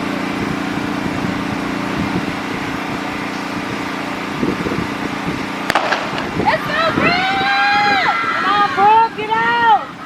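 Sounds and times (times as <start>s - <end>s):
mechanical hum: 0.0s - 10.0s
sharp crack: 5.7s - 6.4s.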